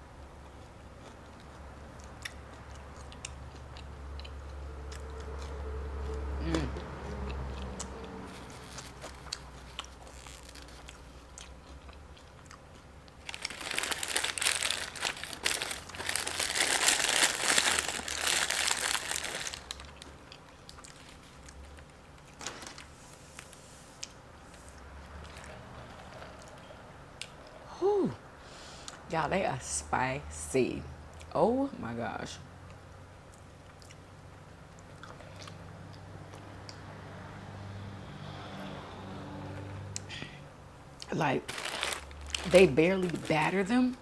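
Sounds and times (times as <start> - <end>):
crunchy chewing: 0.4 - 22.4, 33.2 - 34.1, 34.7 - 36.8.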